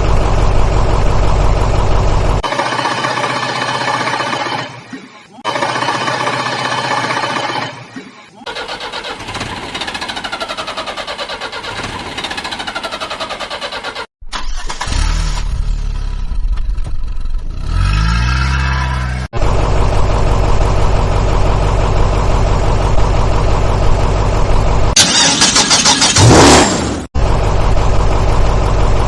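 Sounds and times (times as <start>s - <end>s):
diesel machinery engines running: 0.0s - 29.0s
engine revving up: 17.4s - 19.3s, 25.0s - 27.1s.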